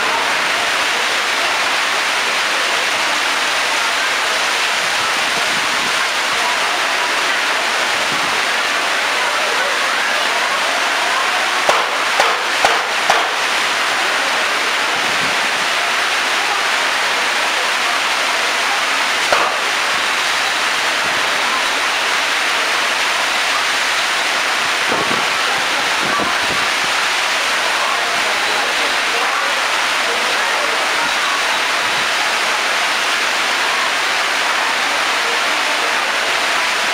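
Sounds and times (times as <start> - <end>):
heavy rain pouring: 0.0 - 36.9
sharp knocks: 11.7 - 13.4, 19.3 - 19.6.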